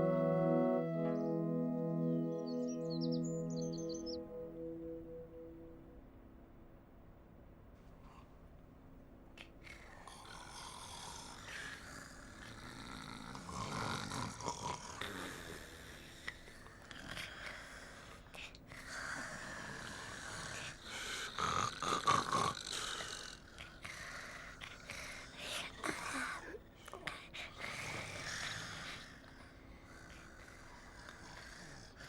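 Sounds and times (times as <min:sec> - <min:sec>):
cartoon voices snoring: 0:09.7 - 0:16.3.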